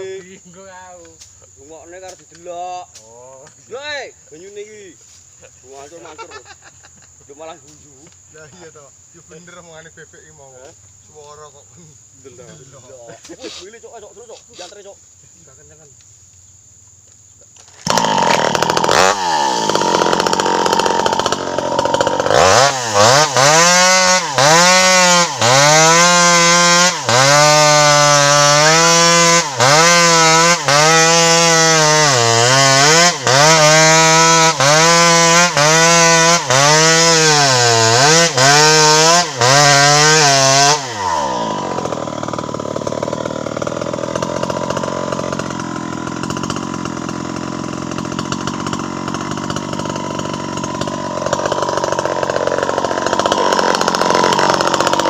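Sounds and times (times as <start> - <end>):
chainsaw revving: 17.6 - 55.0.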